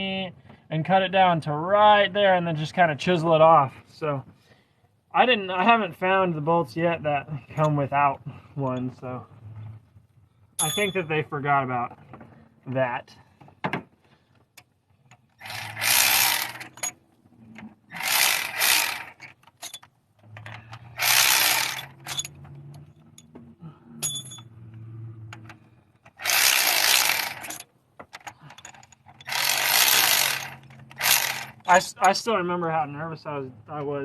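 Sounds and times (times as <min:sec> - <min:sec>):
ratchet rasping: 0:15.0 - 0:17.0, 0:17.9 - 0:23.3, 0:26.0 - 0:27.6, 0:28.2 - 0:32.1.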